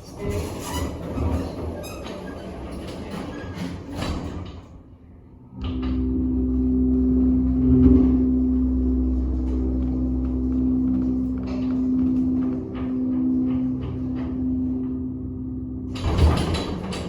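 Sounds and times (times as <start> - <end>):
elevator motor hum: 0.0 - 17.0
elevator rattle: 5.6 - 17.0.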